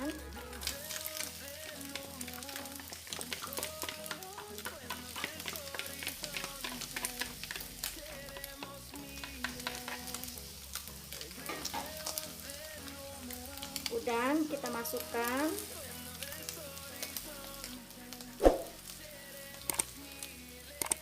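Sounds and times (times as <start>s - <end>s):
food sizzling in frying pan: 0.0s - 21.0s
spatula scraping pan: 2.7s - 10.3s.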